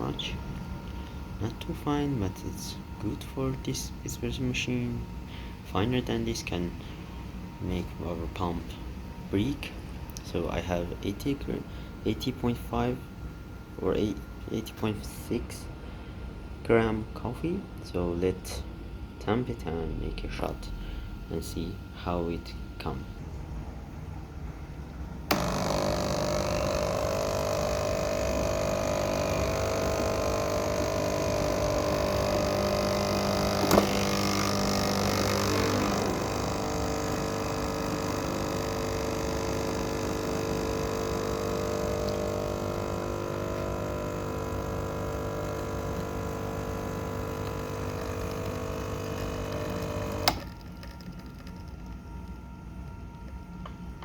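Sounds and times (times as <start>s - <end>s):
espresso machine pump humming: 24.9s - 54.0s.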